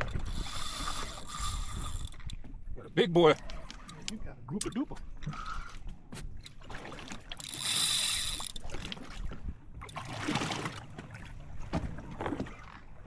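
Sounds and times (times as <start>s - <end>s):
fishing reel drag screaming: 0.2s - 2.2s, 7.4s - 8.6s.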